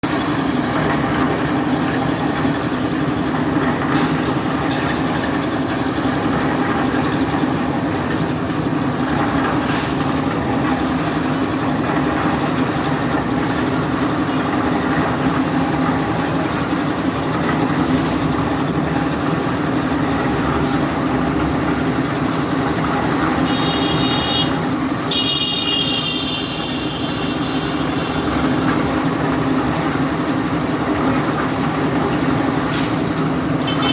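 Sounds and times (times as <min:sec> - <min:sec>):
heavy truck engine running: 0:00.0 - 0:33.9
vehicle horn blasts: 0:23.4 - 0:28.2, 0:33.6 - 0:33.9.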